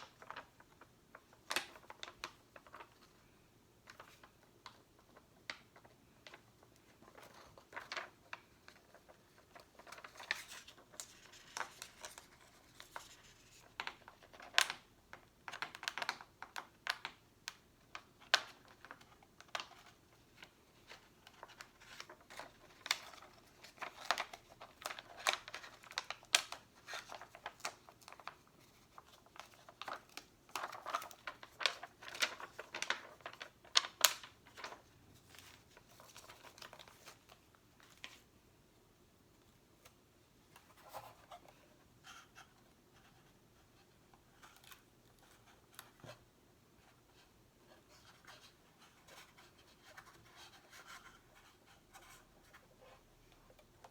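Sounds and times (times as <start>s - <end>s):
sticker sheets crinkling: 3.8s - 38.3s.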